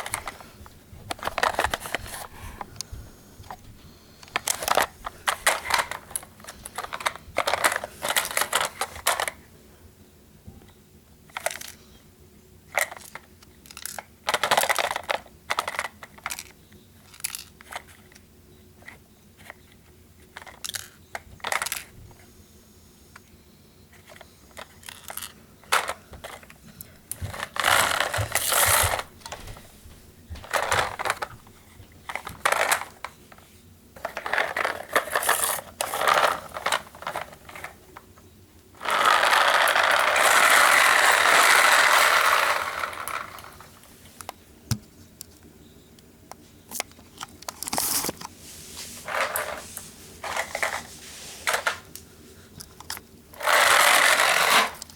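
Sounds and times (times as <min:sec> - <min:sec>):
plastic toy cars clicking and rattling: 0:00.0 - 0:02.7, 0:04.2 - 0:09.4, 0:11.2 - 0:11.8, 0:12.7 - 0:21.9, 0:23.9 - 0:29.6, 0:30.4 - 0:38.1, 0:38.8 - 0:44.4, 0:46.7 - 0:48.3, 0:49.0 - 0:49.6, 0:50.2 - 0:52.0, 0:52.6 - 0:54.9.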